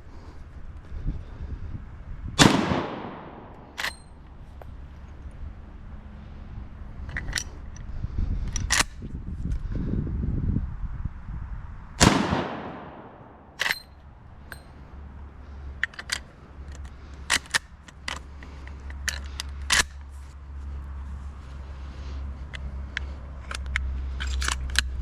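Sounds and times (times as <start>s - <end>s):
rifle shot with echo: 2.4s - 3.8s, 12.0s - 13.7s
rifle lever clicking: 12.0s - 13.9s.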